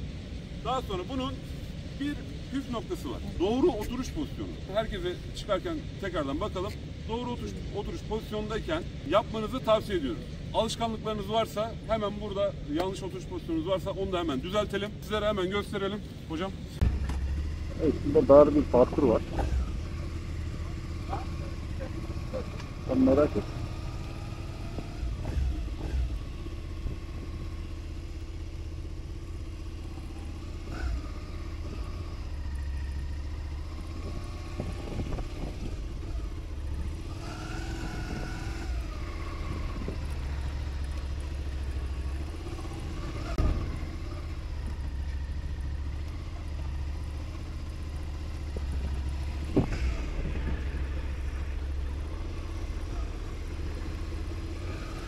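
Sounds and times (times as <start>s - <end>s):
motorcycle engine running: 16.8s - 55.0s.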